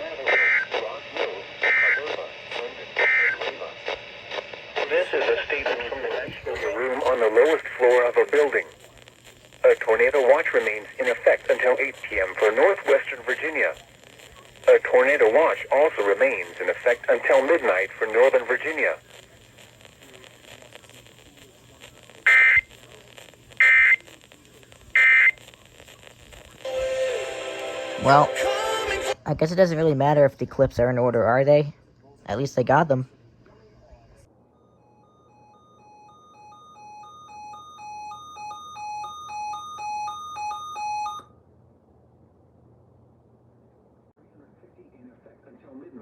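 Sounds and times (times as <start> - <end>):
digital data bursts: 0.2 - 26.7.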